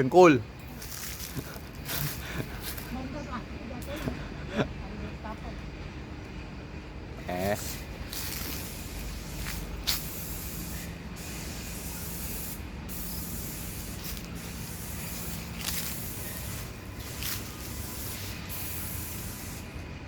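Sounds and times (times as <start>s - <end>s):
sprayer hissing: 0.8s - 2.9s, 7.3s - 19.8s.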